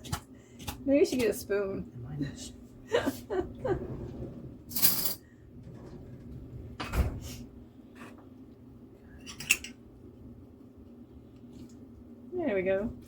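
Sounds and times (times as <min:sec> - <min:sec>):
clatter of utensils: 0:04.7 - 0:05.2, 0:09.2 - 0:09.8.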